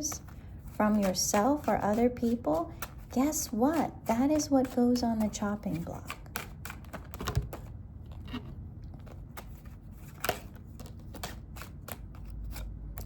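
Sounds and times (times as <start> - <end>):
cards clicking and snapping: 4.3 - 5.3, 6.0 - 7.7, 8.9 - 13.0.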